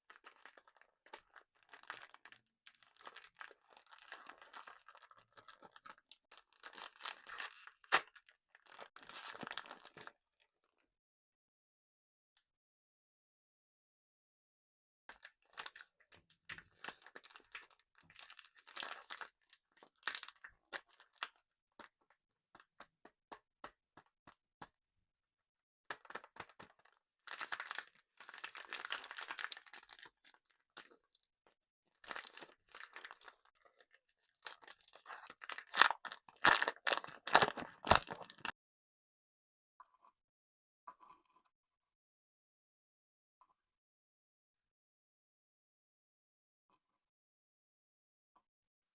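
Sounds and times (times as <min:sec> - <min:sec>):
candy crackling and crunching: 0:00.0 - 0:10.2, 0:15.1 - 0:22.9, 0:25.9 - 0:31.3, 0:31.9 - 0:38.6.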